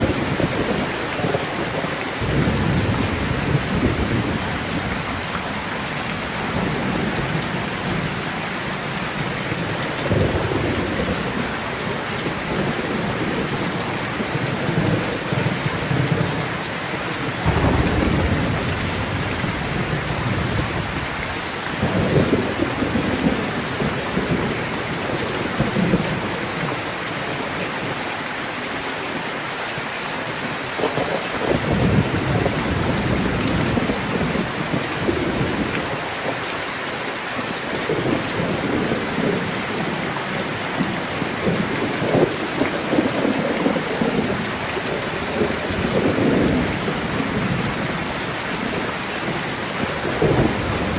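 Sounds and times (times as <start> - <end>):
rolling thunder: 0.0 - 5.4, 9.2 - 26.4, 37.9 - 50.9
heavy rain hissing: 0.0 - 50.9.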